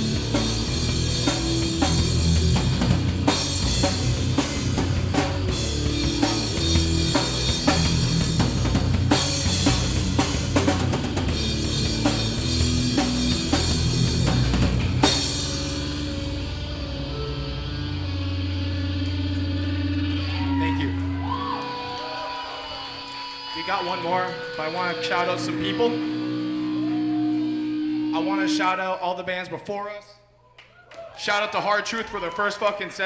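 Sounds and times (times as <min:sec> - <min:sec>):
drum kit pounding: 0:00.0 - 0:21.6
hardcore band playing loud: 0:00.0 - 0:28.5
guitar and bass ringing out: 0:00.0 - 0:29.2.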